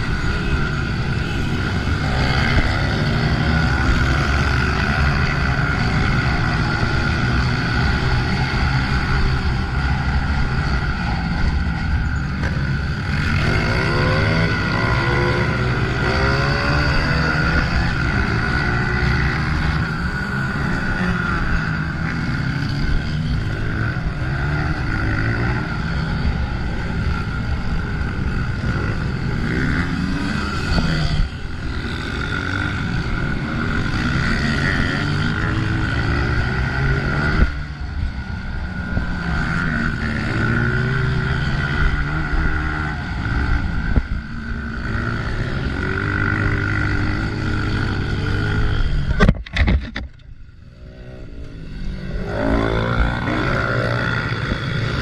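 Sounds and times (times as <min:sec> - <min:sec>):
dirt bike engine revving: 0:00.0 - 0:55.0.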